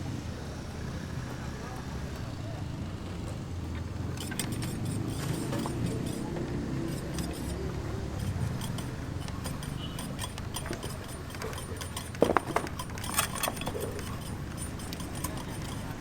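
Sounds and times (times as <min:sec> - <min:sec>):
light metallic clinks: 0:04.1 - 0:16.0.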